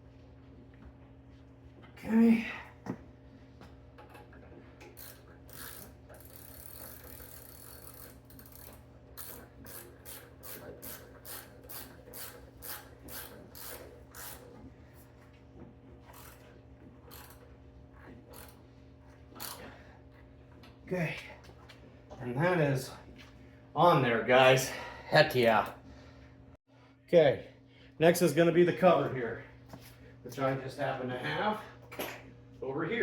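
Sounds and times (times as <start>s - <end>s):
hand ratchet clicking: 4.8s - 14.4s, 17.1s - 17.4s, 19.4s - 19.6s.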